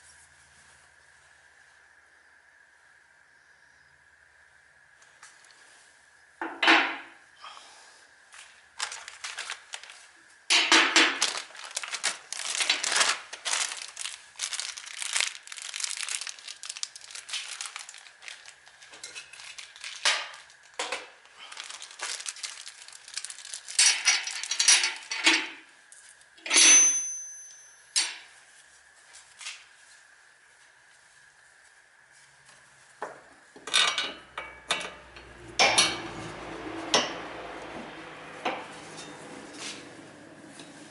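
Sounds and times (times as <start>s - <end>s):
metal tools rustling and clattering: 18.2s - 25.6s, 26.4s - 28.3s
ringing metallic clink: 26.5s - 28.0s.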